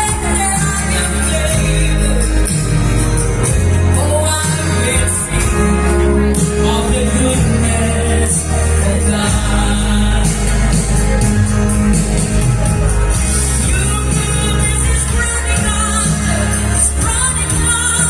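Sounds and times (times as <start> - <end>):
amplified backing music with bass: 0.0 - 18.0.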